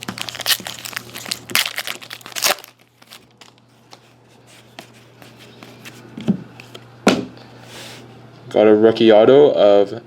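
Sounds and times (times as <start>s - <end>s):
foil wrapper crinkling and tearing: 0.0s - 3.7s
low electrical hum: 0.0s - 10.0s.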